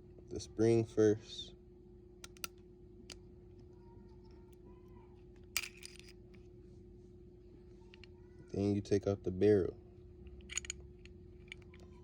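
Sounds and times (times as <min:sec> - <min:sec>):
faint steady hum: 0:00.0 - 0:12.0
clatter of small metal parts: 0:05.5 - 0:06.2, 0:10.3 - 0:12.0.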